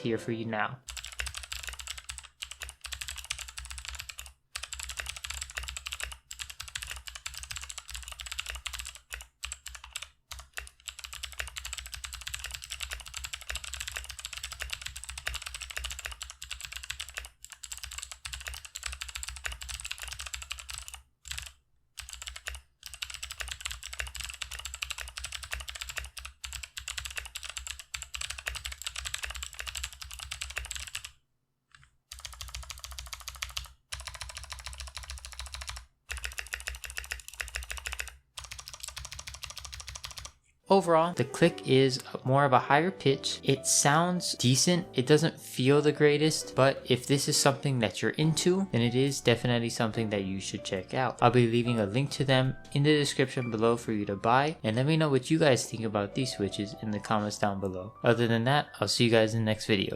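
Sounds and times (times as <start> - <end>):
clicky keyboard typing: 0.9 - 31.1, 31.7 - 40.4.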